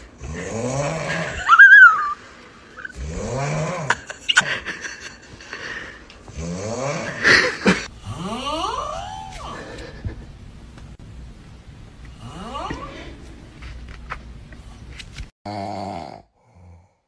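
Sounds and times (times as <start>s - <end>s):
person snoring: 0.2s - 1.5s, 2.8s - 4.2s, 5.8s - 10.0s, 15.5s - 17.0s.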